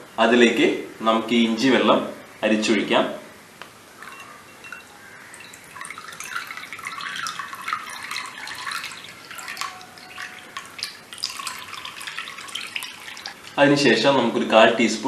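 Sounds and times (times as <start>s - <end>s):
water pouring through a strainer: 4.0s - 14.4s.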